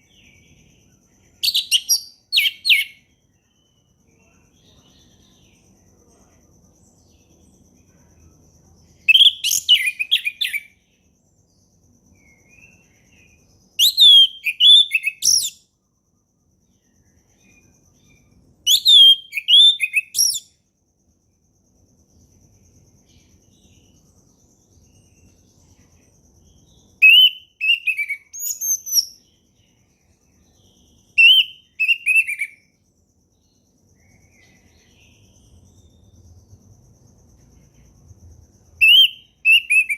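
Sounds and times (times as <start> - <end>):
faint steady high tone: 0.0 - 39.9
thrush singing whistled notes: 1.2 - 3.9, 9.0 - 10.8, 12.1 - 15.7, 16.8 - 20.6, 26.6 - 29.8, 30.7 - 32.8, 38.7 - 39.9.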